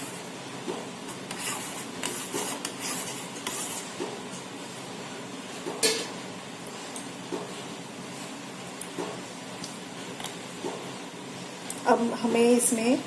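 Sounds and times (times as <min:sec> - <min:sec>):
spoon stirring in a pot: 0:01.1 - 0:04.0.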